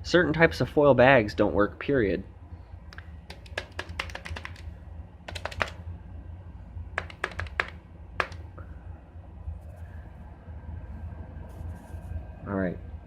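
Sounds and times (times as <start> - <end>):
steady low hum: 0.0 - 13.0
keyboard typing clicks: 2.9 - 4.7, 5.3 - 5.8, 7.0 - 8.4.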